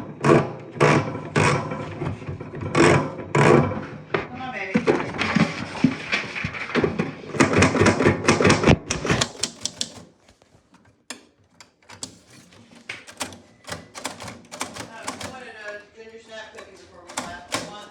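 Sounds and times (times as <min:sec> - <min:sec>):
manual typewriter keystrokes: 0:07.4 - 0:10.4, 0:11.0 - 0:15.8, 0:16.6 - 0:17.9.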